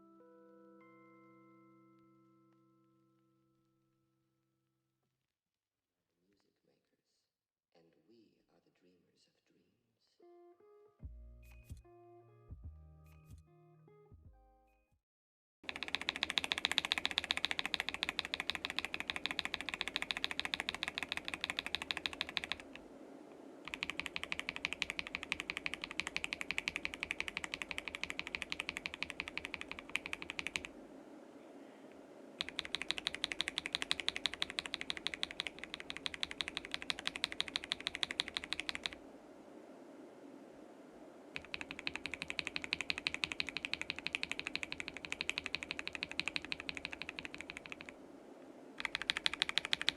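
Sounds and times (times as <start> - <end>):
mechanical keyboard typing: 15.7 - 22.8, 23.7 - 30.8, 32.4 - 39.0, 41.4 - 48.0, 48.8 - 49.9.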